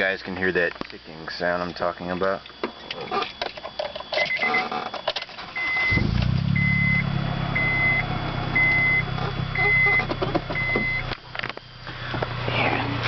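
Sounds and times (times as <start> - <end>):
dashboard warning chime: 4.0 - 11.1
car engine starting and idling: 5.5 - 13.0.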